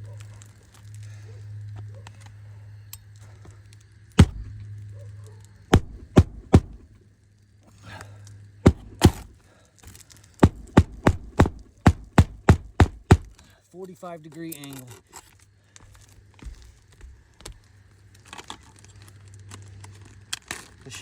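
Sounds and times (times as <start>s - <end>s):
steady low hum: 3.9s - 7.1s, 8.1s - 9.6s, 10.3s - 13.4s
nails driven into shingles: 4.2s - 4.7s, 5.7s - 6.9s, 8.7s - 13.5s.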